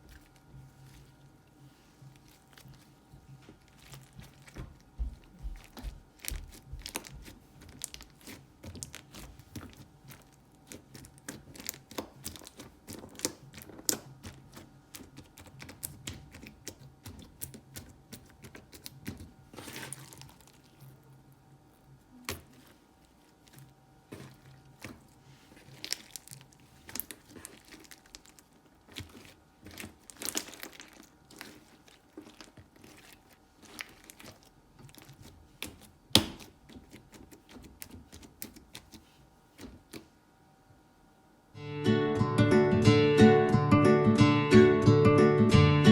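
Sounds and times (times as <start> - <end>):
slime popping and crackling: 3.6 - 20.9, 22.2 - 40.1.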